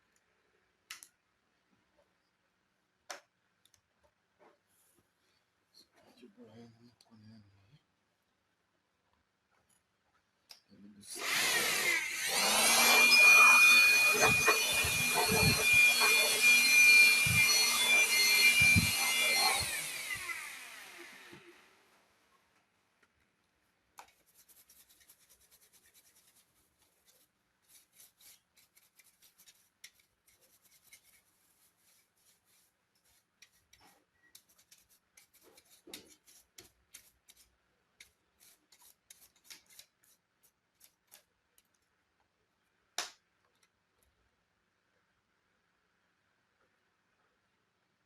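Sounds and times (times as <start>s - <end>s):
small scratching clicks on laptop: 24.0s - 37.4s.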